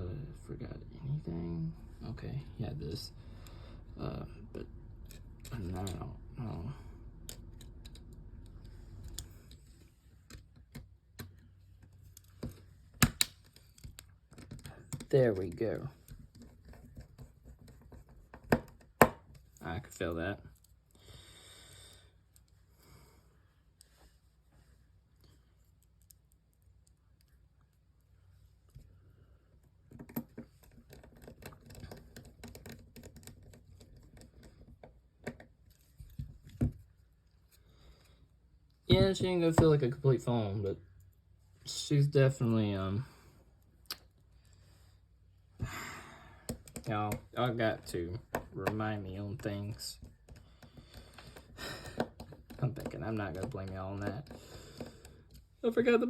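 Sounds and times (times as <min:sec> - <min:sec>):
faint low hum: 0:00.0 - 0:51.9
light clicks and taps of tools: 0:07.1 - 0:20.9, 0:46.4 - 0:55.5.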